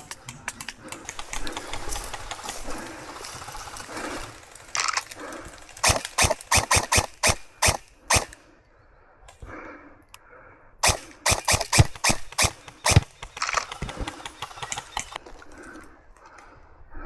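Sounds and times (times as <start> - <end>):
airsoft gun shots: 5.8 - 8.4, 10.8 - 15.1.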